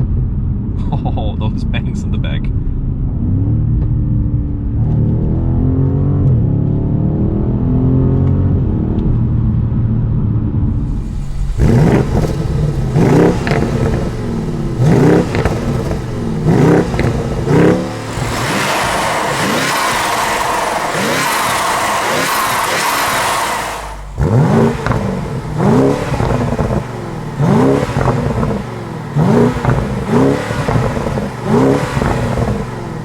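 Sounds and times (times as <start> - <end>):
car engine revving: 10.6 - 33.0
steady rushing noise: 10.7 - 33.0.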